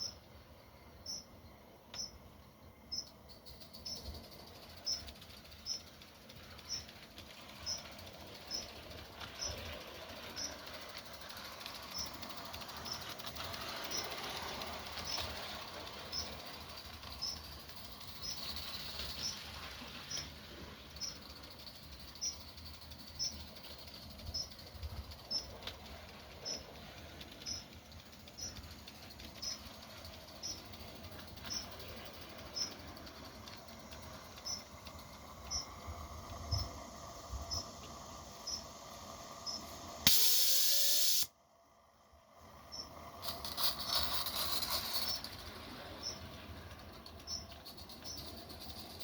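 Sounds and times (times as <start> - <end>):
wheels ticking over rail joints: 0.0 - 40.1, 42.1 - 49.0
loud steam hiss: 36.8 - 41.3.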